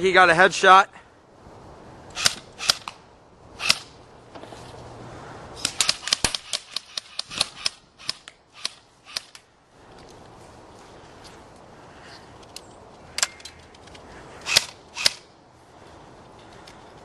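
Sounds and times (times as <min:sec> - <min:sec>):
airsoft gun shots snapping: 0:05.6 - 0:09.4, 0:14.5 - 0:15.2.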